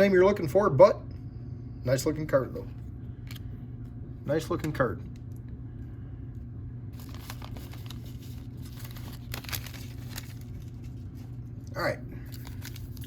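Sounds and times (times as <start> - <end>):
foil wrapper crinkling and tearing: 7.0 - 13.0.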